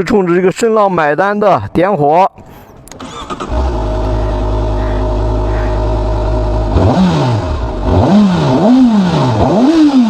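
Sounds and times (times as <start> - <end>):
motorcycle engine idling: 3.0 - 9.3
motorcycle engine revving: 3.0 - 10.0.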